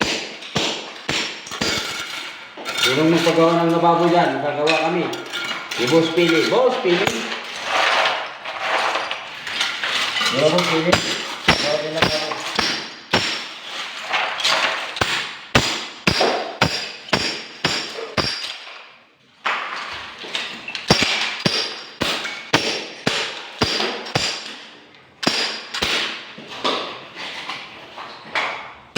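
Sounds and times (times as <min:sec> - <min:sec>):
hammer blows with metallic ring: 0:15.0 - 0:18.5.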